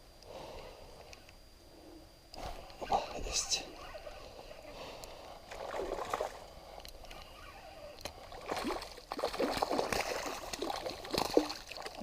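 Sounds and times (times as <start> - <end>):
fish splashing and thrashing in water: 5.5 - 6.6, 8.0 - 12.0.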